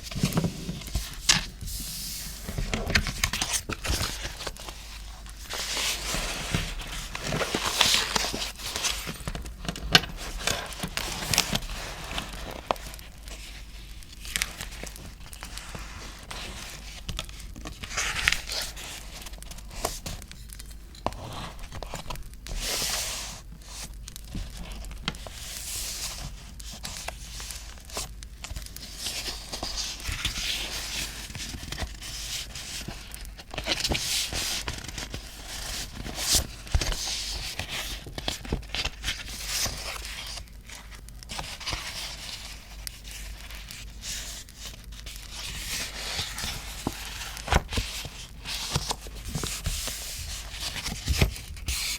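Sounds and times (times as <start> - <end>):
paper tearing and crinkling: 14.2 - 20.2, 24.4 - 51.9.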